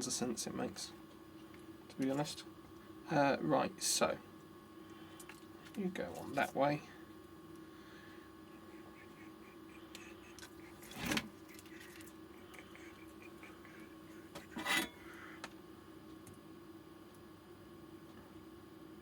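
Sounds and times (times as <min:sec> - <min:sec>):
low steady hum: 0:00.0 - 0:19.0
hands rubbing and scraping wiring: 0:08.6 - 0:14.9.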